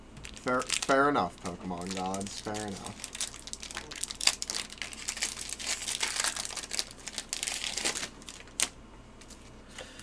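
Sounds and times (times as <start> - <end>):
foil wrapper crinkling: 0.2 - 9.4.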